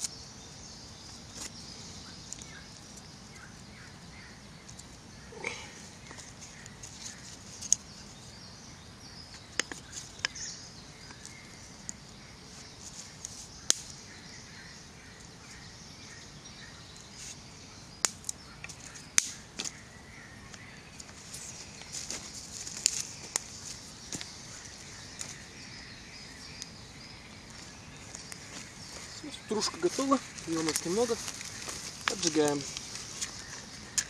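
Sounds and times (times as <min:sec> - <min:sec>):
faint outdoor hiss: 0:00.0 - 0:34.0
damp sticks clicking and snapping: 0:02.3 - 0:03.0, 0:13.2 - 0:13.9, 0:18.0 - 0:19.7, 0:22.6 - 0:23.5, 0:30.4 - 0:34.0.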